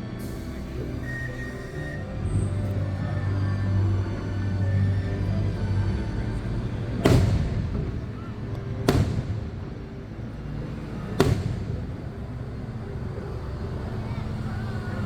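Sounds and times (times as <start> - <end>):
fireworks booming with echo: 6.9 - 12.8.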